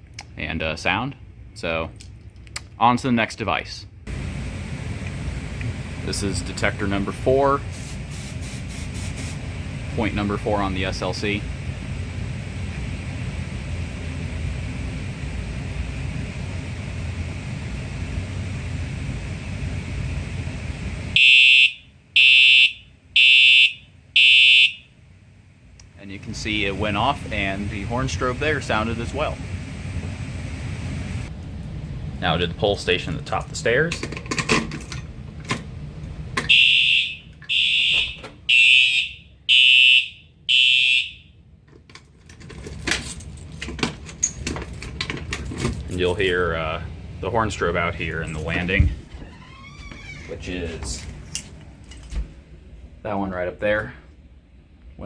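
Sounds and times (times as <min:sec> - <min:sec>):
fire alarm high-pitched beeps: 0:21.2 - 0:24.9, 0:36.5 - 0:41.3.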